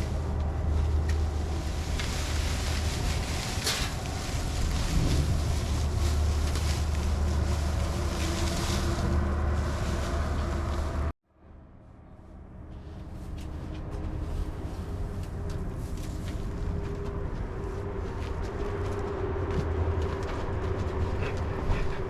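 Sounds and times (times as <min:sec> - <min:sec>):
wind buffeting microphone: 0:00.0 - 0:11.1.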